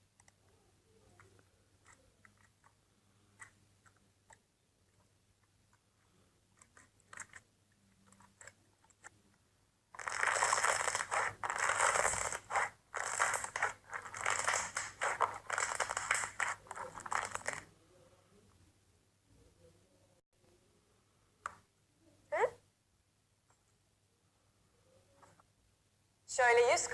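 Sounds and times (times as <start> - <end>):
slime crackling and crunching: 10.0 - 17.6.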